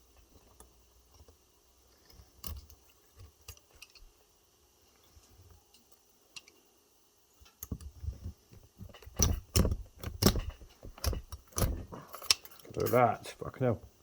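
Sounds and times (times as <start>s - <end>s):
pliers clicking on metal: 9.0s - 13.0s.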